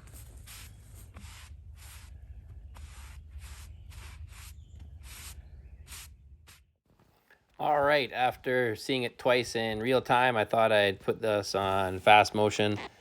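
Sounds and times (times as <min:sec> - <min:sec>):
brush sweeping sawdust: 0:00.0 - 0:02.1, 0:02.8 - 0:06.1.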